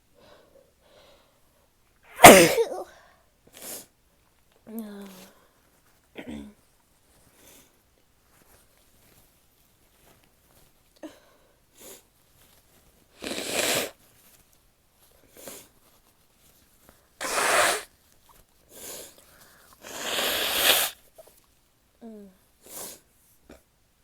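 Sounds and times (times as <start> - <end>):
woman sneezing: 2.2 - 2.9, 17.2 - 17.9, 19.8 - 21.0
short sniffs: 13.1 - 14.0, 17.2 - 17.9, 18.7 - 21.3.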